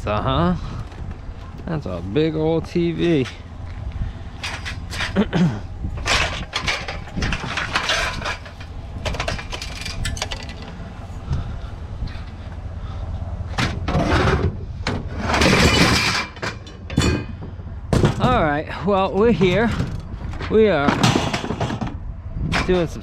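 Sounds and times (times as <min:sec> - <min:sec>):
steady low rumble: 0:00.0 - 0:23.0
scrap items clattering and scraping: 0:04.3 - 0:10.8, 0:13.6 - 0:18.6, 0:19.2 - 0:22.9.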